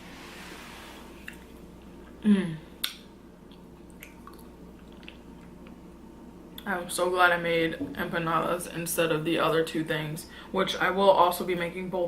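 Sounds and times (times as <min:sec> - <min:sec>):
small mouth clicks: 0:02.8 - 0:05.5
close chewing and mouth sounds: 0:03.5 - 0:05.8.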